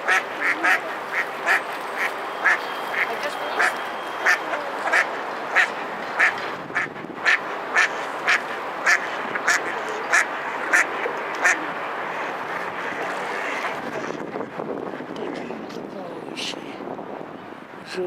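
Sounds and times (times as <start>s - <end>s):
duck quacking: 0.0s - 11.6s.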